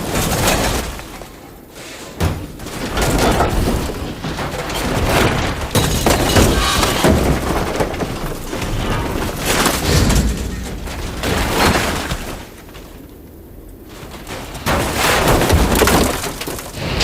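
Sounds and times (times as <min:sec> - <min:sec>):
scrap metal crashing onto ground: 0:03.1 - 0:04.0.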